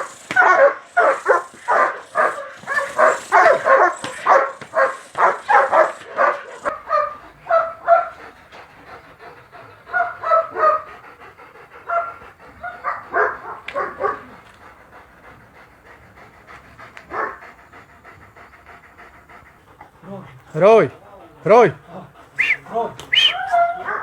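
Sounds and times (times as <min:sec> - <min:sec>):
dog barking: 0:00.0 - 0:08.2, 0:09.9 - 0:10.9, 0:11.9 - 0:14.4, 0:17.1 - 0:17.4, 0:22.4 - 0:24.0
dog panting: 0:00.0 - 0:24.0.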